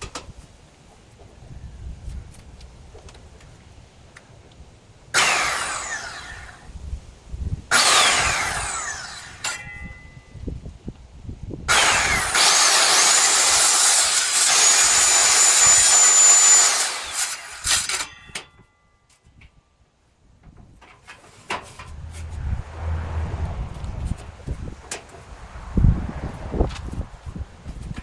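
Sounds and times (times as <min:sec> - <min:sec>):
saw cutting through wood: 0:05.2 - 0:06.8, 0:07.7 - 0:10.0, 0:11.7 - 0:18.3, 0:21.7 - 0:25.9
circular saw whine: 0:05.2 - 0:06.9, 0:07.7 - 0:10.4, 0:11.7 - 0:18.3.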